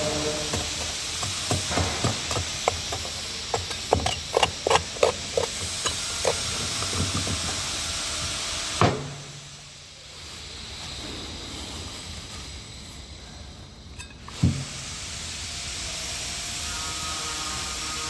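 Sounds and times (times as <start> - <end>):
hand tools knocking on wood: 0.0 - 8.2.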